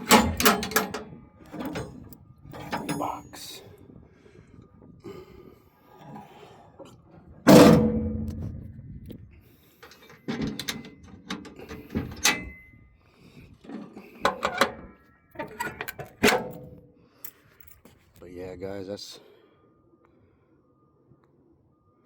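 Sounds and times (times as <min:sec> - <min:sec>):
metal door slamming shut: 0:00.0 - 0:02.0, 0:07.5 - 0:08.6, 0:16.2 - 0:16.8
light metal clanks: 0:00.0 - 0:03.2, 0:13.7 - 0:16.8.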